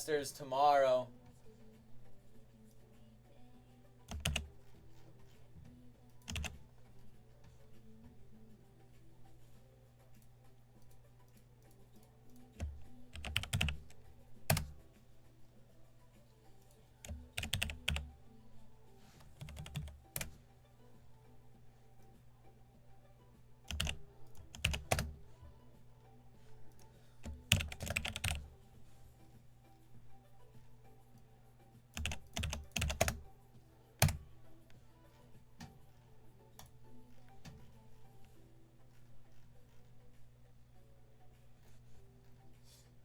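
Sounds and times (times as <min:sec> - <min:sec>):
keyboard typing: 0:04.0 - 0:08.2, 0:10.1 - 0:15.0, 0:16.5 - 0:18.2, 0:19.2 - 0:20.5, 0:23.6 - 0:25.6, 0:26.5 - 0:28.7, 0:31.9 - 0:40.0.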